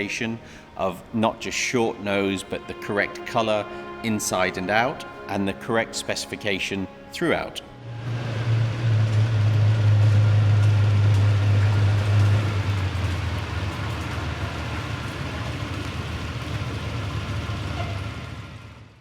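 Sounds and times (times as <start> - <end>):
car engine rumbling: 7.8 - 19.0.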